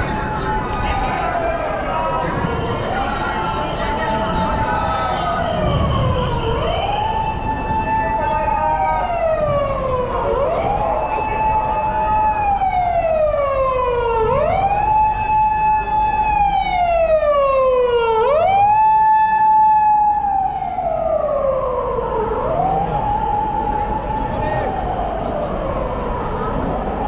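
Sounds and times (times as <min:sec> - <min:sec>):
emergency siren wailing: 0:00.0 - 0:27.0.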